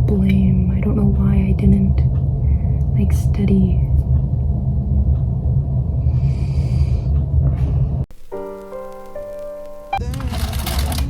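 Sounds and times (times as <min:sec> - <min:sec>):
heavy low rumble: 0:00.0 - 0:08.1
soft background music: 0:08.2 - 0:11.0.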